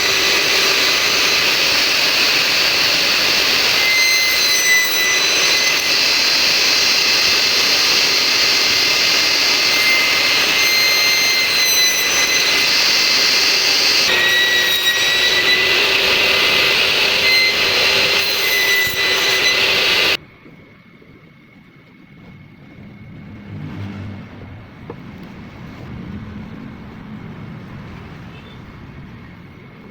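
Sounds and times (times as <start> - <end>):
woodworking power tool whining: 0.0 - 20.2.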